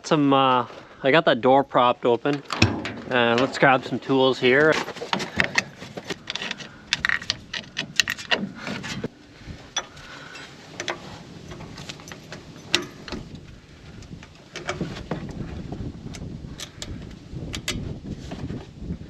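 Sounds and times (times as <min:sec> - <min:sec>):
metal hand tools clinking: 0:09.8 - 0:13.2.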